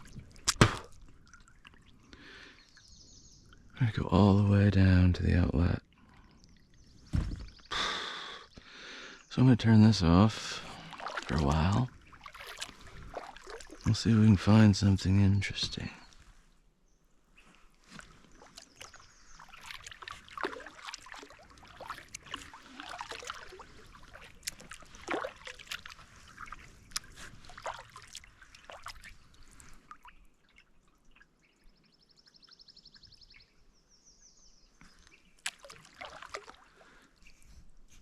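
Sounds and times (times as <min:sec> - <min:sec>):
paddle splashes: 0:00.0 - 0:03.6, 0:10.4 - 0:14.9, 0:17.3 - 0:31.2, 0:34.8 - 0:37.6
water trickling and dripping: 0:00.0 - 0:07.7, 0:09.9 - 0:16.4, 0:17.8 - 0:33.1, 0:34.8 - 0:37.3.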